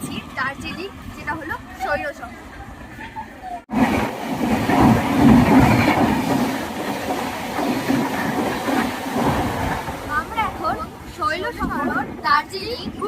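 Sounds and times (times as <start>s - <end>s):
train rumbling on rails: 0.0s - 13.0s.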